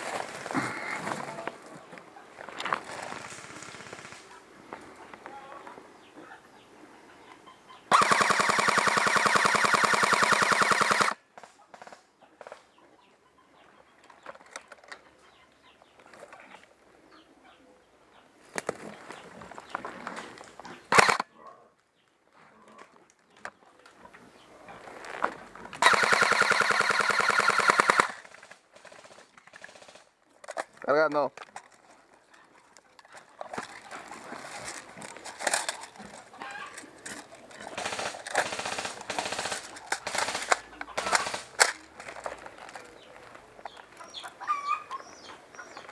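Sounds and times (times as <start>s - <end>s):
airsoft rifle full-auto burst: 7.9s - 11.2s, 20.9s - 21.2s, 25.8s - 28.2s, 37.8s - 41.6s.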